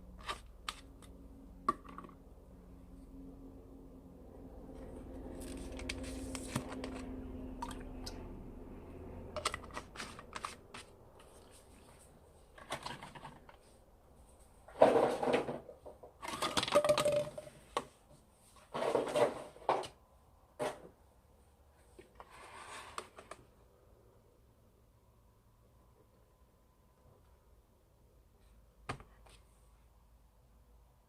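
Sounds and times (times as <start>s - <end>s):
low steady hum: 0.0s - 14.7s.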